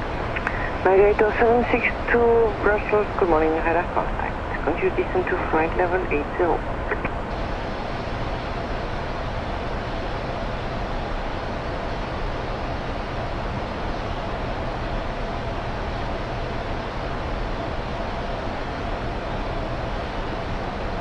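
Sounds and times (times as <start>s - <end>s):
rush of airflow: 0.0s - 0.9s.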